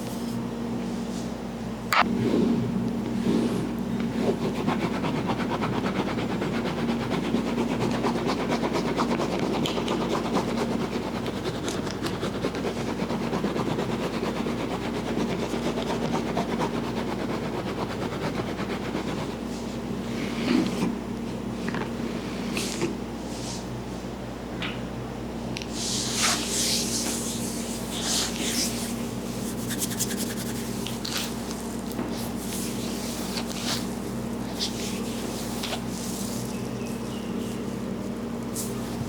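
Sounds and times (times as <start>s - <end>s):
steady low hum: 0.0s - 39.0s
rapid rubbing and tapping on head: 29.5s - 33.9s.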